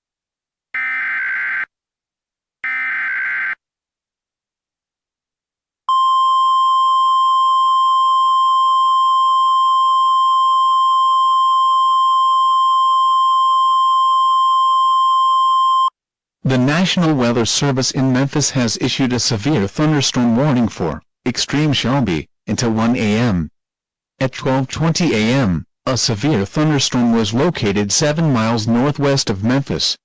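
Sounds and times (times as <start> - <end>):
steady warning alarm tone: 5.9 - 15.9.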